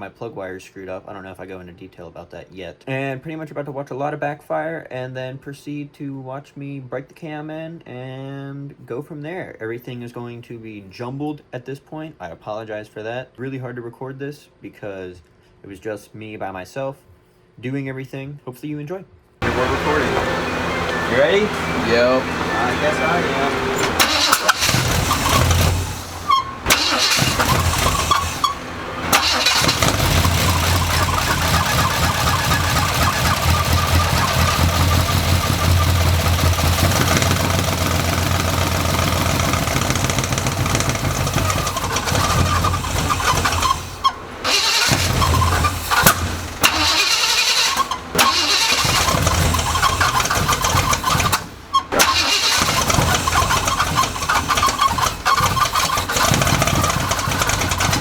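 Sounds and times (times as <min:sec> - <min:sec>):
truck engine running roughly: 0:19.4 - 0:58.0.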